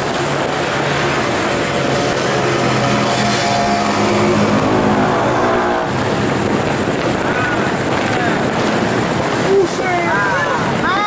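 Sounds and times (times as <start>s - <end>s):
steady tones: 0.0s - 7.9s
locomotive engine humming: 0.0s - 9.2s.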